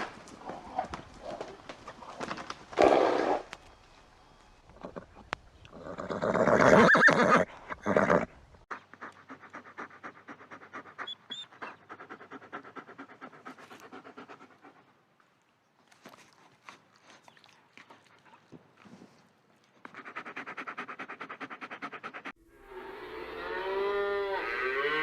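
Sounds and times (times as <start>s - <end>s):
animal panting: 8.7s - 15.1s, 15.9s - 22.4s.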